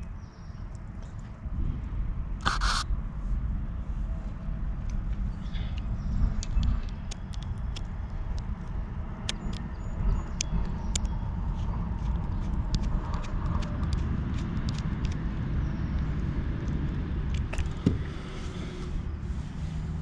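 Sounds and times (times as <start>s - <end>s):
steady low rumble: 0.0s - 20.0s
short scraping hiss: 2.4s - 2.8s.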